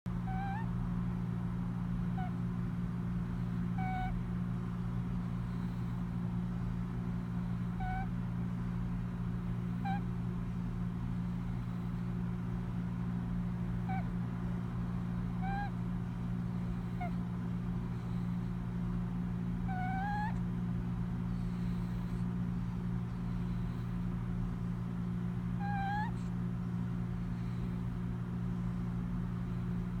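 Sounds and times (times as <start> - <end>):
steady low hum: 0.1 - 30.0
cat snoring in squeaks: 0.2 - 0.7, 3.6 - 4.2, 5.4 - 6.0, 7.3 - 8.1, 9.6 - 10.1, 15.2 - 15.8, 16.6 - 17.2, 19.6 - 20.4, 21.2 - 22.5, 25.6 - 26.2.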